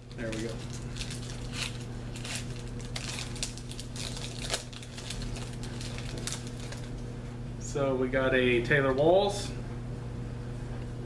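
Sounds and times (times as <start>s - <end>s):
wrapper crinkling: 0.0s - 7.0s
steady low hum: 0.0s - 11.0s.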